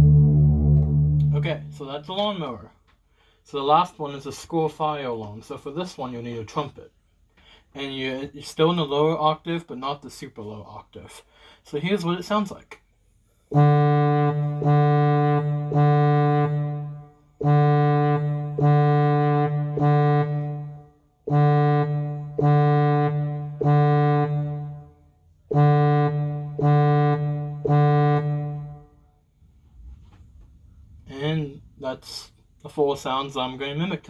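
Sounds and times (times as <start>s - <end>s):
keyboard trumpet notes: 0.0s - 2.3s, 13.5s - 28.9s.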